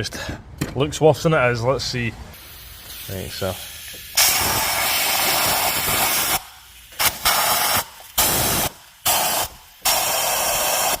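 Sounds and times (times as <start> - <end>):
pressurised spray hissing: 2.4 - 11.0.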